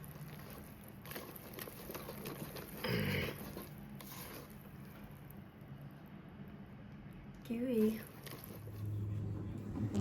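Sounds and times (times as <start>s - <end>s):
batter squelching when stirred: 0.0s - 5.9s, 7.6s - 8.9s.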